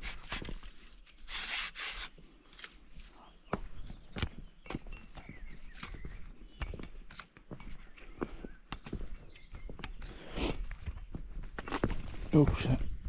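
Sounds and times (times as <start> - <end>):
brushing scrape: 0.0 - 2.7
footsteps on rough bank: 0.0 - 13.0.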